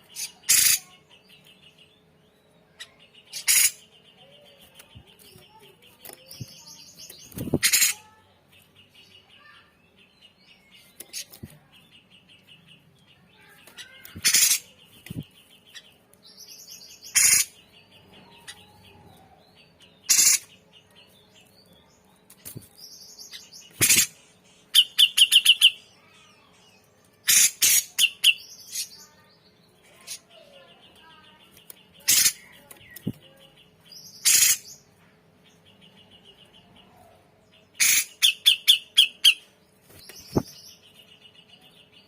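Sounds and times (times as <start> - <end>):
bird harsh calls: 0.0 - 1.1, 2.8 - 8.2, 13.4 - 15.9, 16.5 - 19.3, 20.0 - 20.8, 23.2 - 26.5, 27.2 - 29.2, 31.9 - 33.4, 34.0 - 34.9, 35.8 - 41.7.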